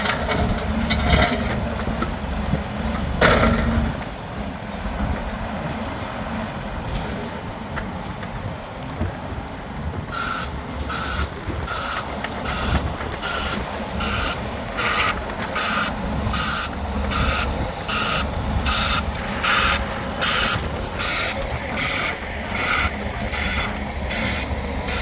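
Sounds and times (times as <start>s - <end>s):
diesel engine rumble: 0.0s - 25.0s
backup alarm beeping: 10.1s - 25.0s.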